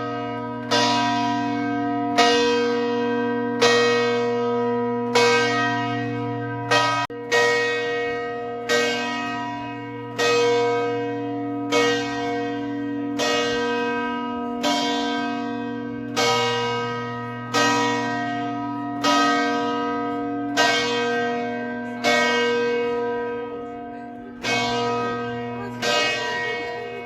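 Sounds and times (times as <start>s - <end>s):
large church bell tolling: 0.0s - 27.0s.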